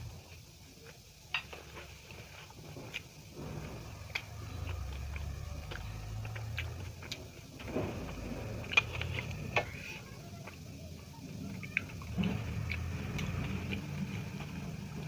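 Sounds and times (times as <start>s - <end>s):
person chewing with clicks: 3.8s - 10.6s, 11.5s - 15.0s.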